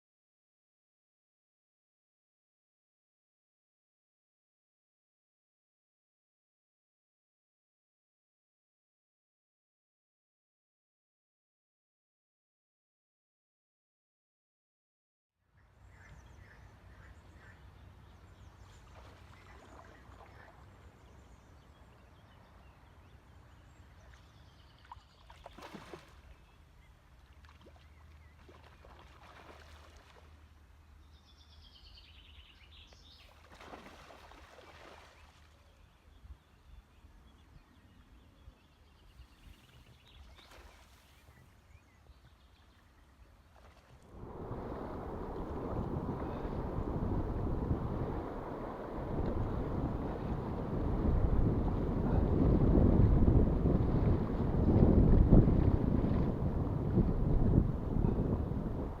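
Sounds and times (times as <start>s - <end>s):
bird chirp: 15.5s - 29.0s, 30.9s - 33.4s
soft water swishes: 15.7s - 59.0s.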